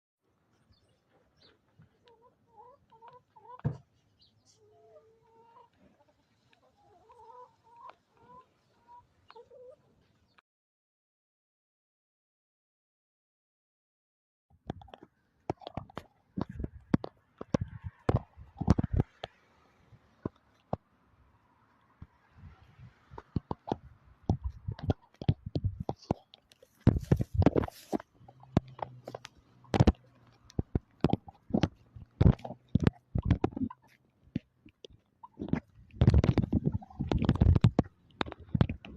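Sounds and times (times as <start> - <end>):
chickens clucking: 0.5 - 10.3, 14.9 - 20.8, 21.9 - 38.9
taps clicks and knocks: 14.6 - 19.4, 23.2 - 38.9.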